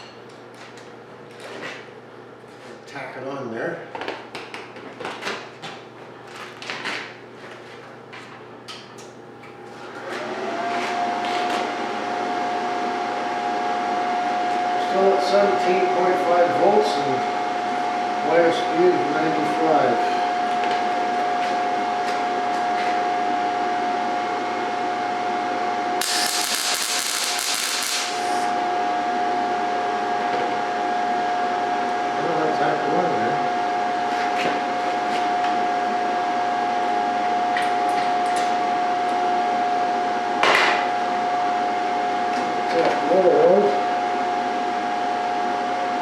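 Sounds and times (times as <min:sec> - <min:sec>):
welder arc crackling and hissing: 0:26.0 - 0:28.9
steady high hum: 0:26.0 - 0:30.9.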